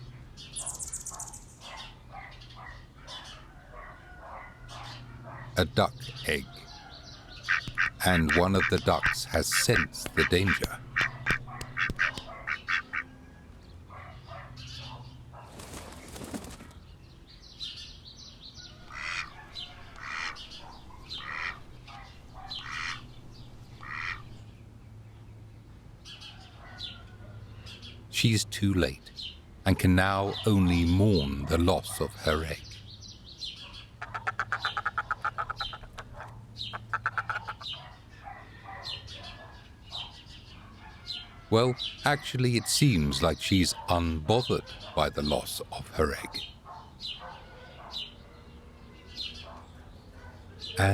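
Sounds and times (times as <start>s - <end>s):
high bird chirps: 0.6s - 1.8s, 7.4s - 13.0s, 18.8s - 24.4s
duck calling: 7.5s - 13.1s, 18.8s - 24.4s, 34.0s - 37.7s
duck flapping wings: 11.0s - 12.5s, 15.4s - 16.8s.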